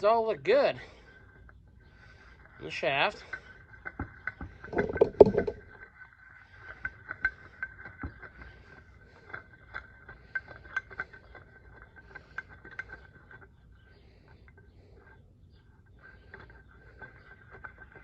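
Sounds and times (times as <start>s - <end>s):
metal clunk: 4.7s - 5.7s.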